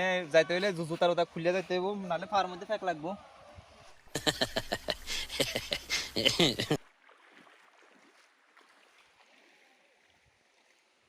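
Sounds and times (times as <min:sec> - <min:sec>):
faint running stream water: 0:00.0 - 0:11.0
man speaking: 0:05.4 - 0:06.8.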